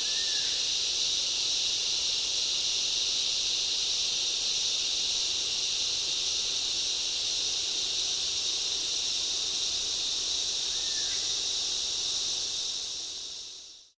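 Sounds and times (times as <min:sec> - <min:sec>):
insects droning: 0:00.0 - 0:13.9.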